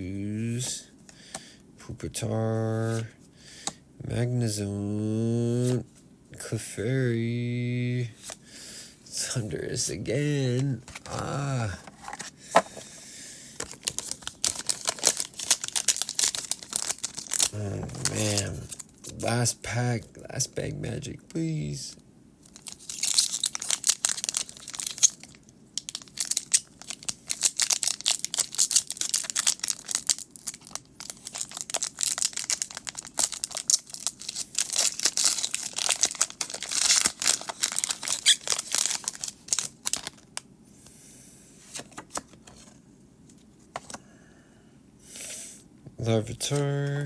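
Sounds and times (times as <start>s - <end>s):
foil wrapper tearing and crinkling: 13.6s - 18.9s, 22.5s - 40.2s.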